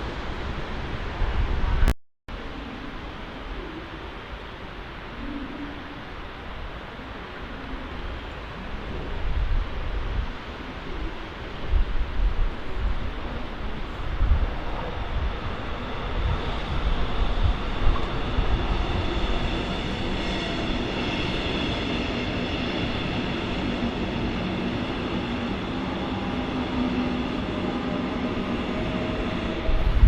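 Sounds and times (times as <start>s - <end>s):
train wheels rumbling: 14.2s - 30.0s.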